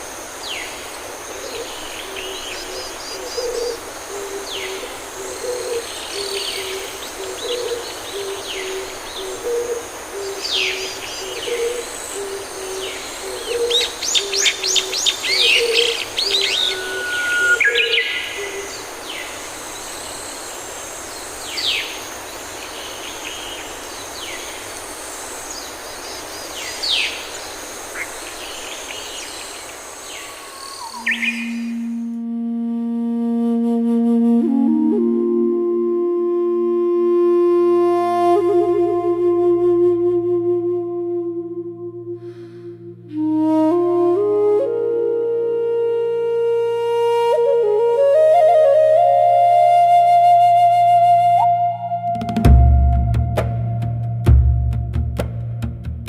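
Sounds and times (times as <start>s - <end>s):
high bird chirps and whistles: 13.6s - 18.6s
faint high whine: 15.2s - 25.6s
low two-note bird call: 15.5s - 18.5s.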